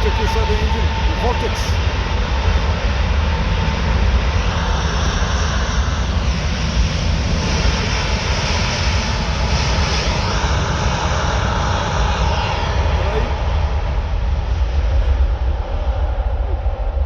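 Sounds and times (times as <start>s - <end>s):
faint high whine: 0.0s - 6.7s
jet engine rumble: 0.0s - 17.0s.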